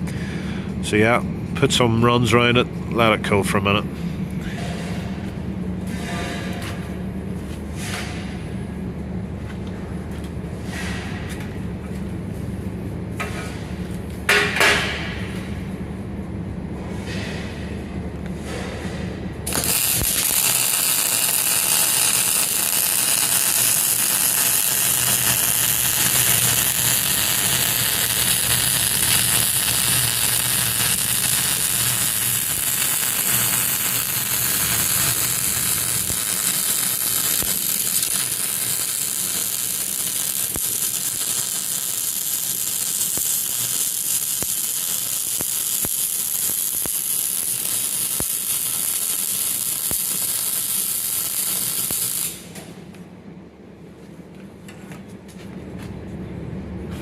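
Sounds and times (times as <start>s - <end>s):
welding arc crackling: 19.4s - 52.6s.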